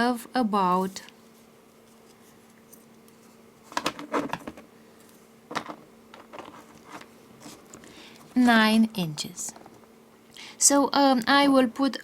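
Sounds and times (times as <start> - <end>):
low steady hum: 0.0 - 12.0
cord rustles and taps: 1.9 - 8.4.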